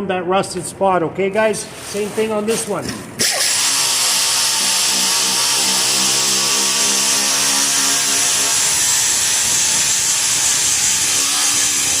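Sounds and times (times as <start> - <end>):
angle grinder grinding metal: 3.2 - 12.0.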